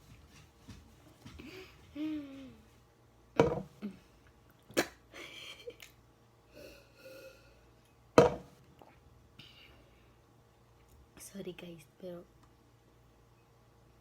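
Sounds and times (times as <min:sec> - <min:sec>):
sniffly wheezy breaths: 0:06.5 - 0:07.8.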